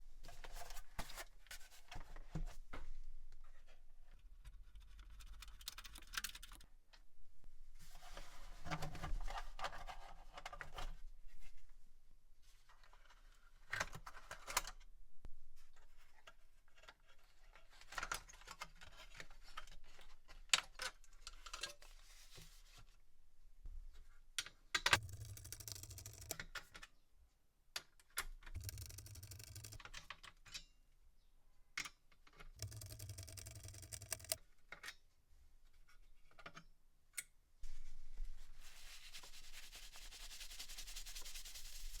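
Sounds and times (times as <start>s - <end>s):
plastic and metal clicks: 24.9s - 26.5s, 28.6s - 30.2s, 32.6s - 34.4s
hands scraping and rubbing: 38.6s - 42.0s.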